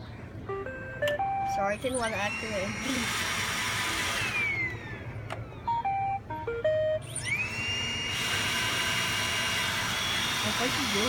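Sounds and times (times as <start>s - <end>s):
electronic tune of beeps: 0.5s - 3.0s, 5.6s - 7.6s
vacuum motor whine: 1.9s - 6.0s, 6.7s - 11.0s.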